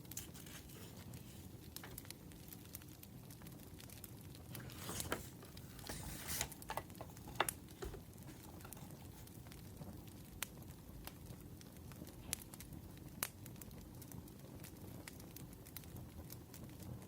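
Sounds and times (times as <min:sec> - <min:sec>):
paper rustling: 0:00.0 - 0:02.1, 0:04.5 - 0:09.4
wood fire crackling: 0:00.0 - 0:17.0.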